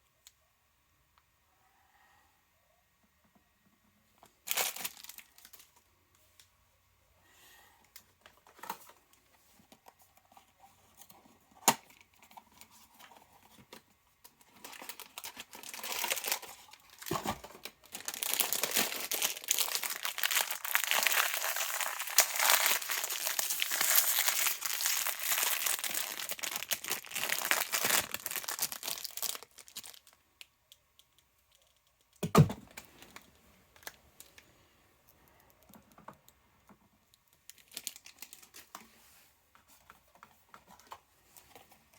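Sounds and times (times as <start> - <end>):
packaging crinkling and tearing: 4.2 - 5.8, 11.6 - 30.2, 37.2 - 38.8
thump: 32.2 - 32.7.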